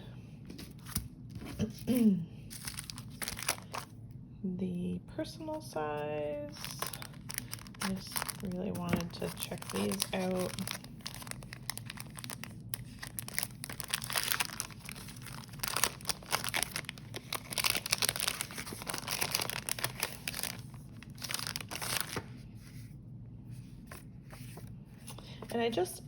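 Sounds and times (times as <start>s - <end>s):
packaging crinkling: 0.7s - 3.9s, 6.5s - 22.4s.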